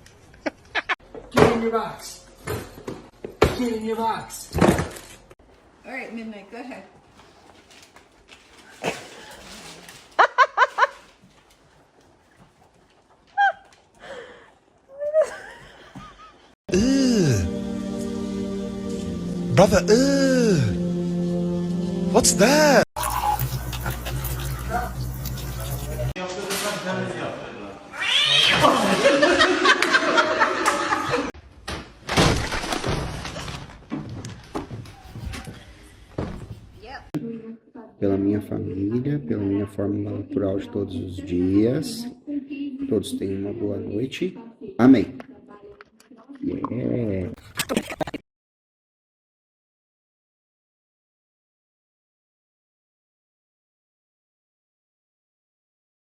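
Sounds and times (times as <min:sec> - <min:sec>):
cat meowing: 0:27.9 - 0:28.7.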